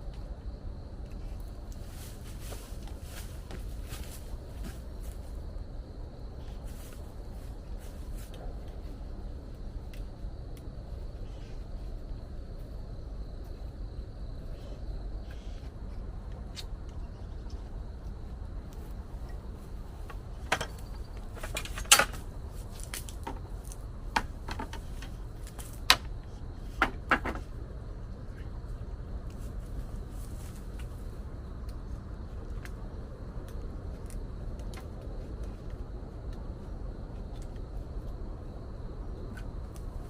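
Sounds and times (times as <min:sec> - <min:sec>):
low rumbling background: 0:00.0 - 0:40.0
sharp knocks and clicks: 0:20.1 - 0:22.2, 0:24.1 - 0:26.2, 0:26.8 - 0:27.5.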